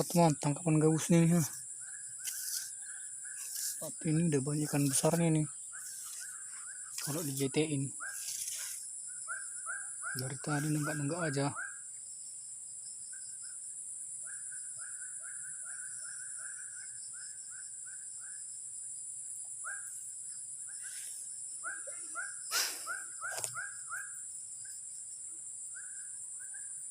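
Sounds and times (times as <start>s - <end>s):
high-pitched insect buzz: 0.0s - 12.3s, 19.9s - 24.9s.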